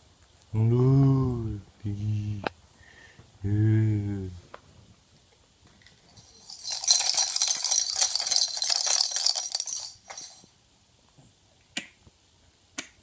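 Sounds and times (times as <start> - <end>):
jingling clinking rattle: 6.1 - 10.5.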